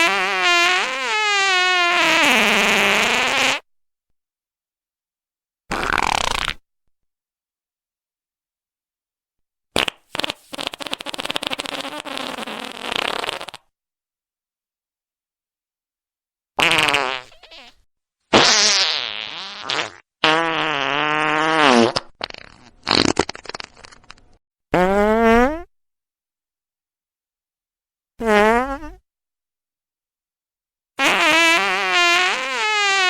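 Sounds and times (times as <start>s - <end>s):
farts: 0.0s - 3.7s, 5.7s - 6.6s, 9.8s - 13.7s, 16.6s - 25.7s, 28.2s - 29.0s, 31.0s - 33.0s.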